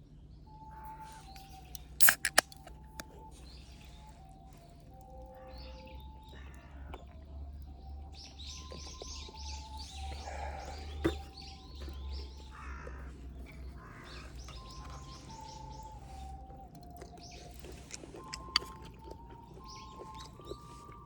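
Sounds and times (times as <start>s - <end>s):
soft recorder music: 0.3s - 21.0s
bird chirping: 0.4s - 21.0s
sharp click: 1.4s - 3.1s.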